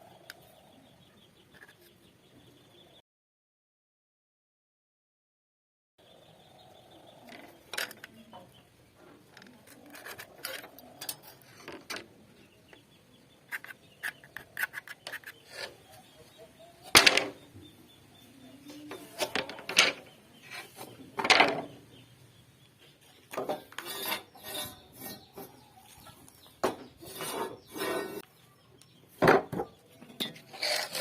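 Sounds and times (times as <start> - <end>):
scraping and rubbing on wood: 9.1 - 12.1, 13.5 - 15.8, 23.3 - 28.3, 29.5 - 31.0.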